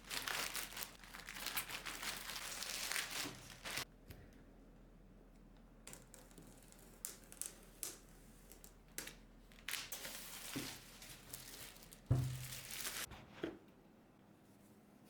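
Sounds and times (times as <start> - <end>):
packaging crinkling and rustling: 0.0 - 3.9, 5.9 - 13.1
object set down with a thump: 12.1 - 12.4.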